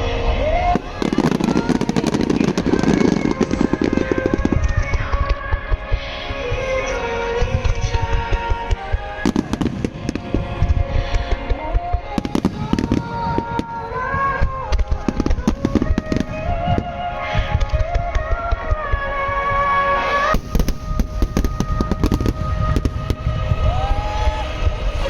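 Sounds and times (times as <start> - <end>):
fireworks booms and cracks: 0.0 - 6.8, 7.4 - 25.0
slow melodic music: 0.0 - 25.0.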